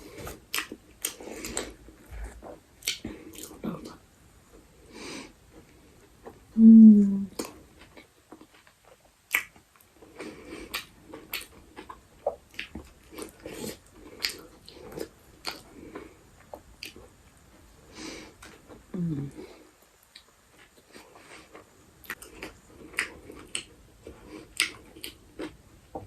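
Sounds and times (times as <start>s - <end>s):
person humming: 6.6s - 7.4s, 18.9s - 19.4s.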